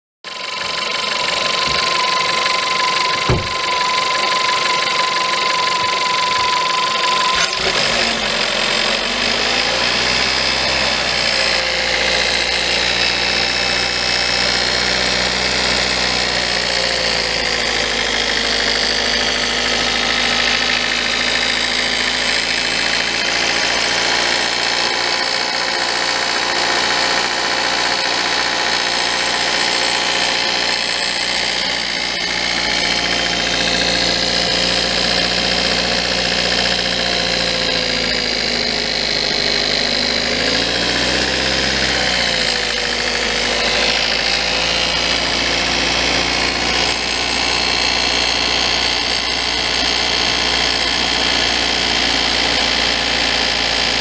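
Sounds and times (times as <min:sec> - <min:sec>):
steady high tone: 0:00.3 - 0:09.0
car engine running with rattle: 0:00.3 - 0:54.0.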